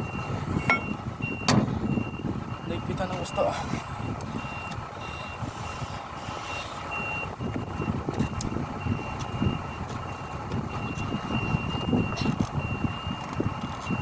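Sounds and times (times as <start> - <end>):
warning beeper beeping: 0.0 - 3.6
diesel engine rumbling: 0.0 - 14.0.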